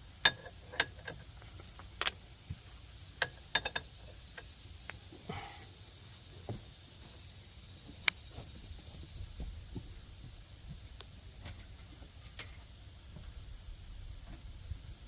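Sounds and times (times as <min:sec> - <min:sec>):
metallic clicks of hand tools: 0:03.2 - 0:04.5.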